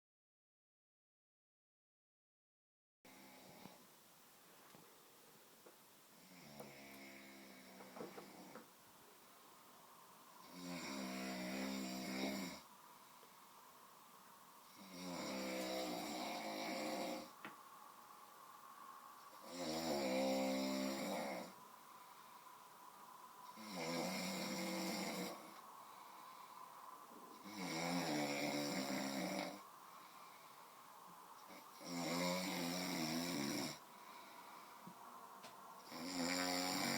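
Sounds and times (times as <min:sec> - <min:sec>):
person snoring heavily: 0:06.2 - 0:08.6, 0:10.4 - 0:12.7, 0:14.7 - 0:17.4, 0:19.3 - 0:22.4, 0:23.4 - 0:26.7, 0:27.3 - 0:30.8, 0:31.5 - 0:34.9, 0:35.8 - 0:36.9.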